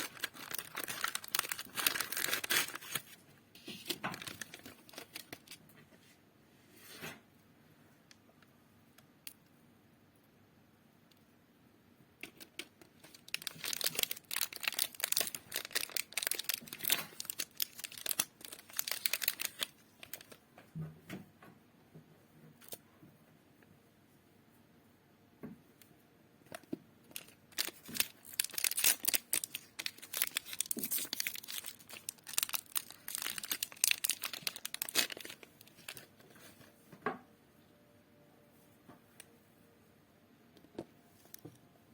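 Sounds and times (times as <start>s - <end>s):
wrappers being torn and crinkled: 0.0s - 5.6s, 12.2s - 20.4s, 27.1s - 36.2s.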